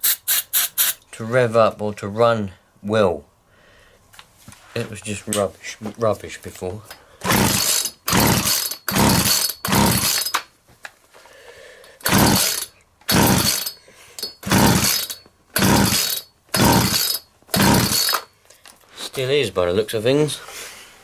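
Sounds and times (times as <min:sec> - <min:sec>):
chainsaw recoil starter pulls: 0:07.2 - 0:10.4, 0:12.0 - 0:18.3.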